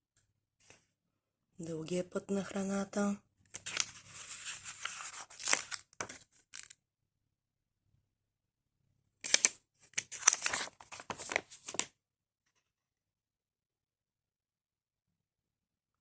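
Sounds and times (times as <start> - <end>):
paper rustling and crackling: 3.6 - 6.7, 9.3 - 11.9.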